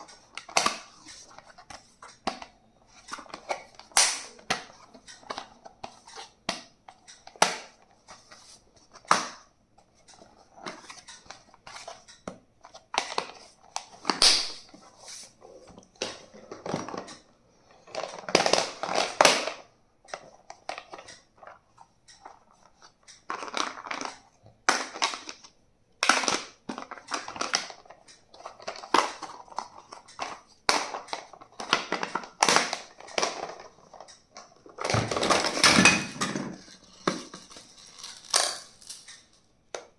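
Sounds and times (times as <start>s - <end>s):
packaging crinkling and rustling: 22.2s - 39.3s.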